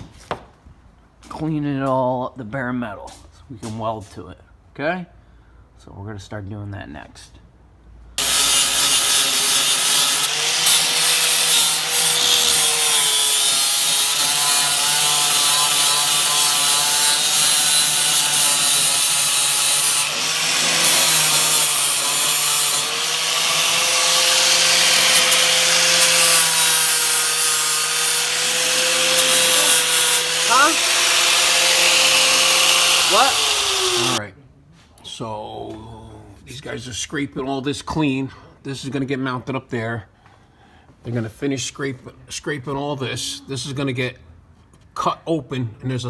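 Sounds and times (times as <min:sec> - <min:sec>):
angle grinder grinding metal: 0:08.2 - 0:34.2.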